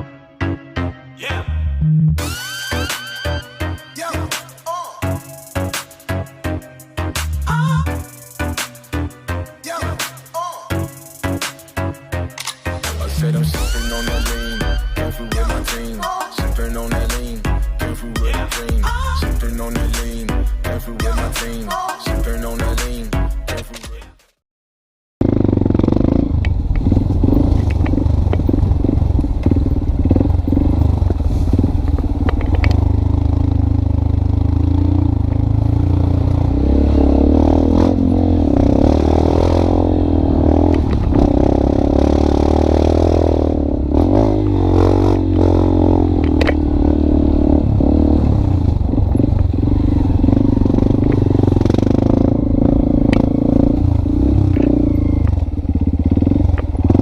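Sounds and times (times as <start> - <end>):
engine running: 25.2 - 57.0.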